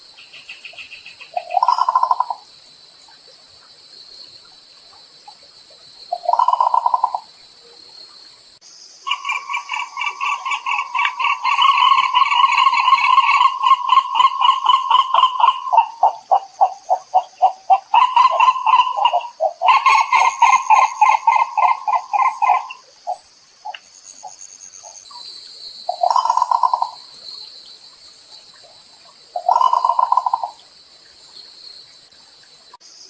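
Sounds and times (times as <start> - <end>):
ibis calling: 0.2 - 2.4, 6.1 - 7.3, 9.0 - 25.2, 25.8 - 27.0, 29.3 - 30.6.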